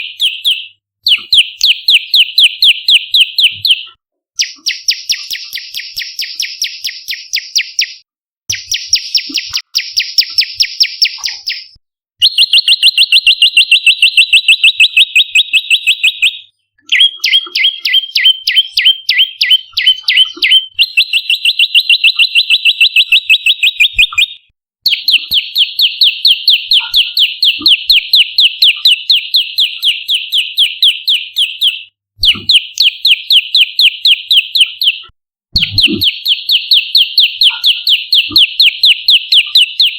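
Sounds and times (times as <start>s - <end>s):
bird calling in rapid trills: 0.0s - 39.9s.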